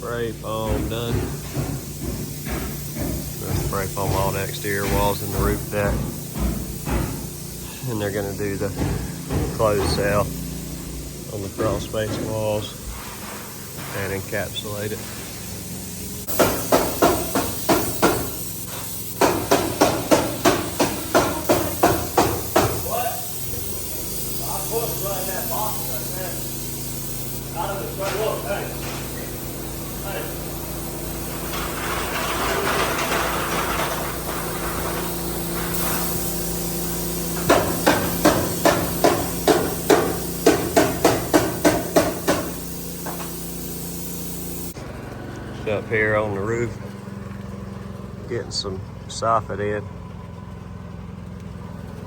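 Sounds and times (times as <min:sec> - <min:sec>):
steady hiss: 0:00.0 - 0:44.8
hammering blows: 0:00.3 - 0:14.3, 0:15.5 - 0:23.2, 0:26.9 - 0:43.3.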